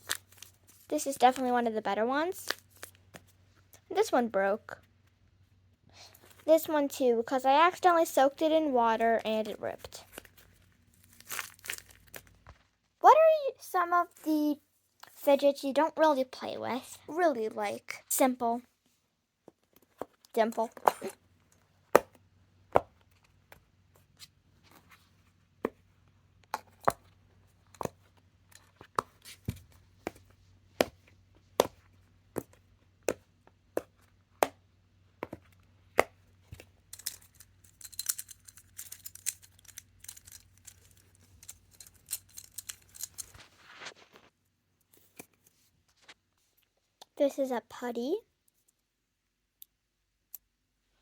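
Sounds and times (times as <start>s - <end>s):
crackling and clicking: 36.9s - 44.9s.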